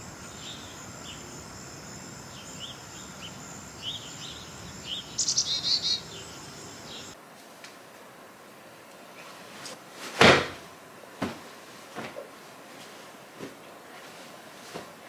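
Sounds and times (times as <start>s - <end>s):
high insect drone: 0.0s - 7.2s
songbirds chirping: 0.0s - 7.2s.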